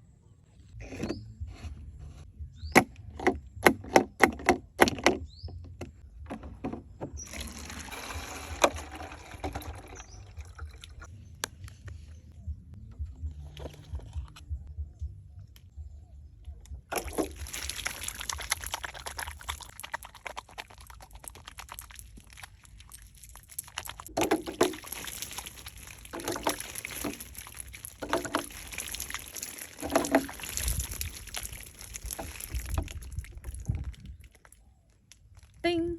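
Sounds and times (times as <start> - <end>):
water sloshing and pouring: 7.1 - 11.1, 16.9 - 34.6
loud water splashes: 16.9 - 20.6, 23.6 - 33.5.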